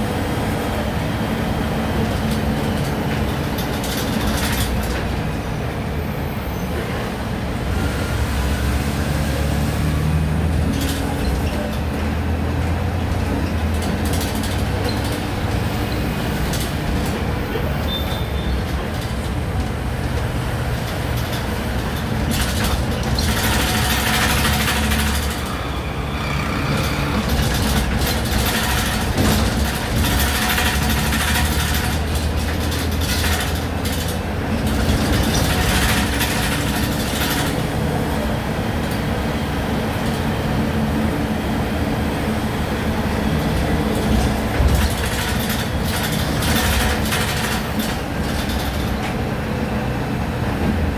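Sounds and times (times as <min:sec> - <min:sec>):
bus engine humming: 0:00.0 - 0:50.9.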